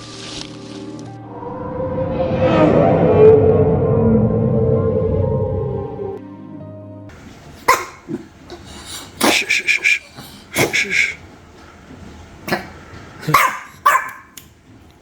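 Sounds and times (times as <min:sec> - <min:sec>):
dogs barking: 0:07.6 - 0:11.2, 0:12.5 - 0:14.4.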